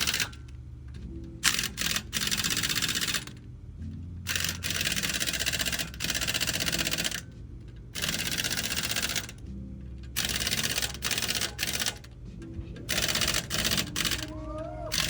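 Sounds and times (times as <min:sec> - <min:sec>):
pneumatic tool rattling: 0:00.0 - 0:00.5
low steady hum: 0:03.1 - 0:08.1, 0:09.3 - 0:15.0.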